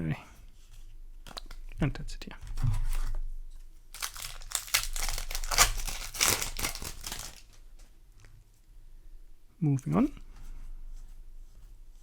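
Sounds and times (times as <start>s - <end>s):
foil wrapper crinkling and tearing: 3.9s - 7.6s.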